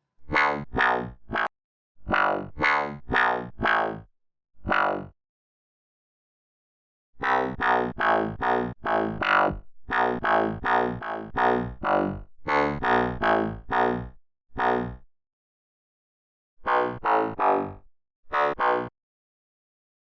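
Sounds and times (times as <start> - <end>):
synthesizer bass notes: 0.3 - 1.5, 2.1 - 4.0, 7.3 - 15.0.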